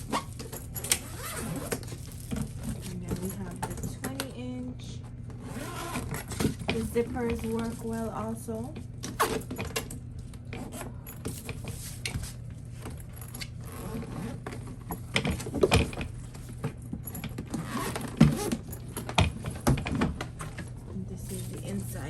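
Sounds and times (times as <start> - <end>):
zipper rasping: 0.0 - 2.0, 5.4 - 6.4, 13.4 - 14.6, 17.1 - 18.9
metal zipper pulls clinking: 0.0 - 2.7, 13.1 - 14.4, 17.0 - 19.1.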